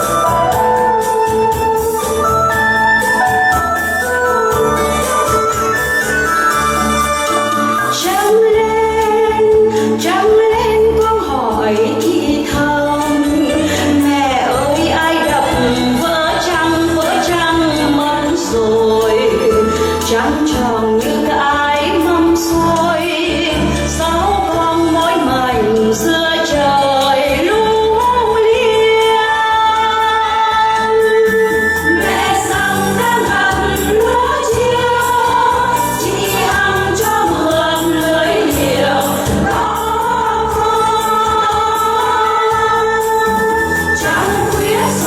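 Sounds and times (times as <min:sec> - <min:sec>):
instrumental backing with bass beat: 0:00.0 - 0:10.2
choir singing: 0:31.9 - 0:43.4, 0:44.0 - 0:45.0.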